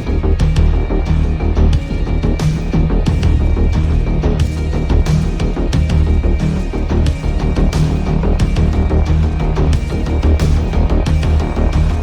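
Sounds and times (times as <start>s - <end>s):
deep bass notes: 0.0s - 12.0s.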